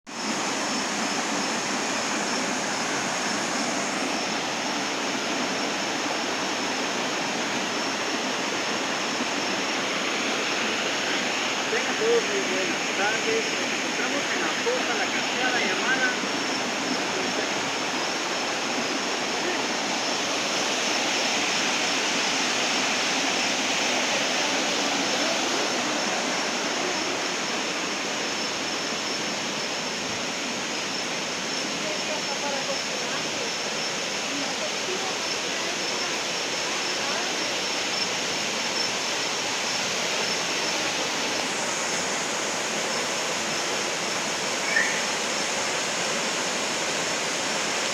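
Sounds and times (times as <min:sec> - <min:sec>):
waterfall roaring: 0:00.1 - 0:47.9
thin high steady tone: 0:39.6 - 0:46.9.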